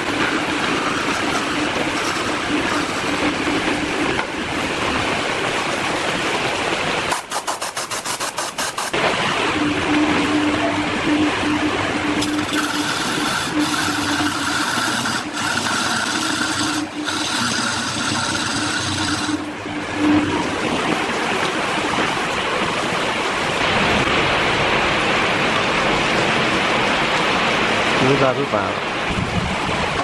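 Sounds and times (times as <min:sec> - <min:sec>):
power tool motor whine: 0:00.0 - 0:03.6, 0:12.1 - 0:20.4
hiss of material being worked: 0:07.1 - 0:09.0, 0:12.2 - 0:19.4.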